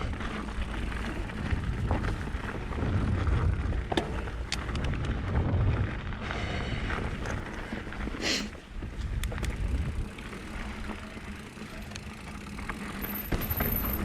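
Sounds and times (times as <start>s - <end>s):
bike clicks and rattles: 0.0s - 14.0s
bike tyres rumbling on dirt: 0.0s - 14.0s
wind on microphone: 1.3s - 7.5s.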